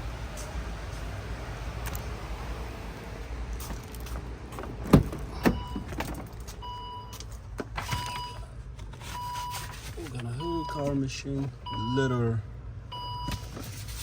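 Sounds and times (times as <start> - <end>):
car electronic warning chime: 5.4 - 5.9, 6.6 - 7.2, 7.8 - 8.5, 10.3 - 11.0, 11.6 - 13.5.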